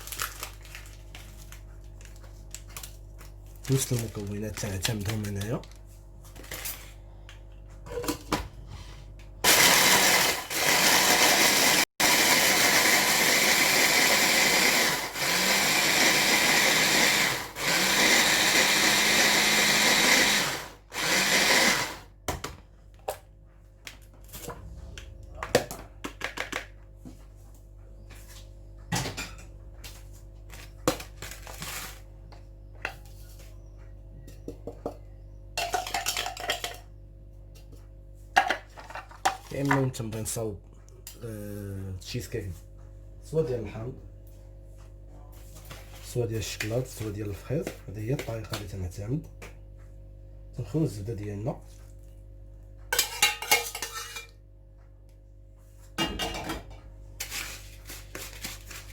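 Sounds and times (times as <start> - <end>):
blender grinding biscuits: 9.4 - 22.1.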